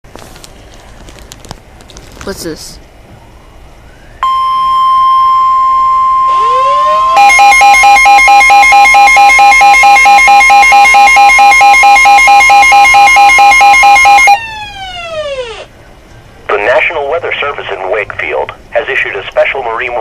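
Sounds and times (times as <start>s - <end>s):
rising tone glides: 4.2s - 7.3s
loud steady alert tone: 4.2s - 14.4s
pulsing second tone: 4.2s - 14.4s.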